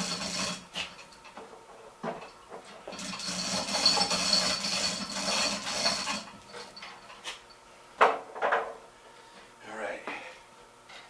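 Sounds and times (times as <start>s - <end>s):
wooden dolly scraping on floor: 0.0s - 1.0s, 2.6s - 7.4s.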